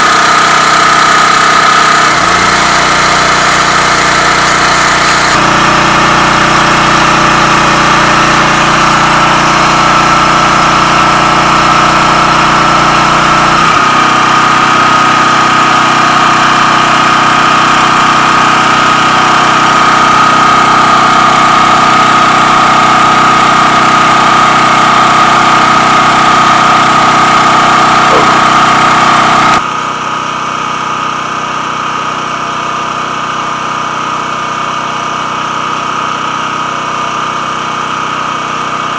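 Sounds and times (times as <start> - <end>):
generator engine running: 0.0 - 38.9.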